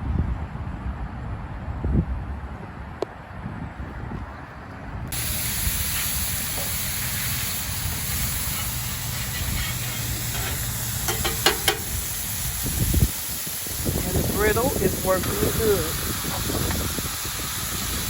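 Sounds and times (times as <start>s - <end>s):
sizzling on griddle: 5.1s - 18.0s.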